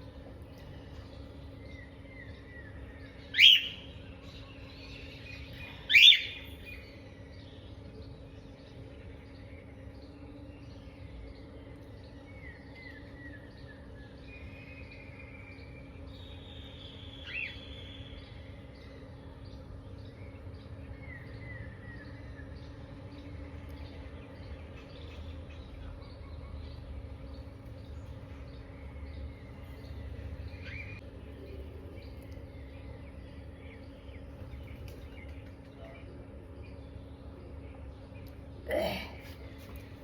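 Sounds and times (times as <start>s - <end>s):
birds chirping: 0.0s - 40.0s
person sneezing: 38.7s - 39.4s.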